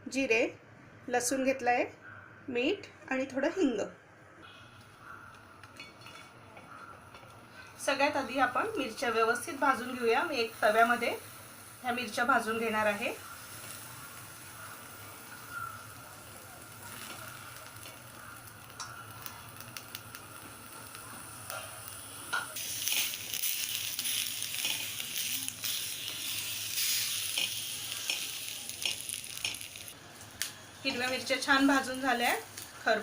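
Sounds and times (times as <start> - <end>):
chillies sizzling on griddle: 4.5 - 33.0
clicks and scrapes turning chillies: 15.6 - 32.8.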